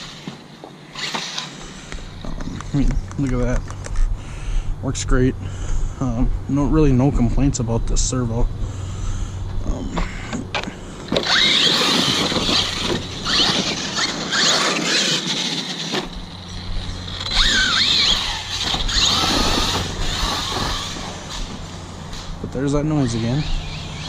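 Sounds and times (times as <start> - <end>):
electric motor whining: 0.0 - 4.1, 8.9 - 24.0
drivetrain noise: 0.0 - 24.0.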